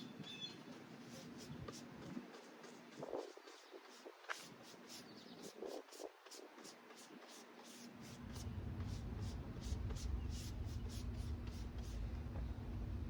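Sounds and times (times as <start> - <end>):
paintbrush swishing over wood: 0.6 - 12.0
steady low hum: 7.9 - 13.0.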